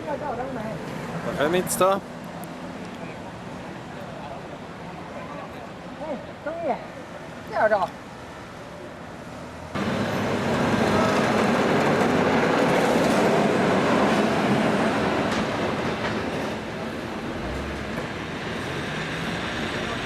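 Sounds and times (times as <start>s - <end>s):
train rumbling and rattling: 9.8s - 20.0s.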